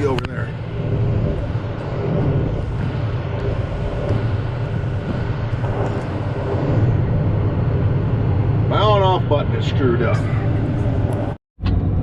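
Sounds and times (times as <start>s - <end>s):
tractor engine rumbling: 0.0s - 12.0s.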